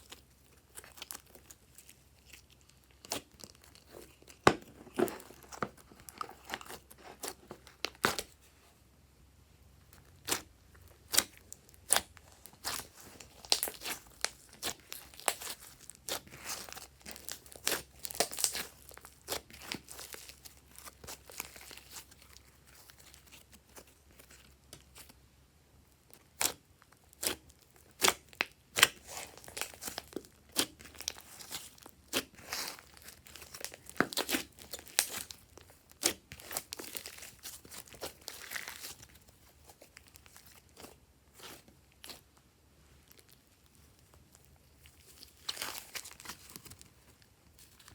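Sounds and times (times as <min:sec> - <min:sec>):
slime squishing and popping: 0:10.0 - 0:23.8, 0:26.2 - 0:42.3.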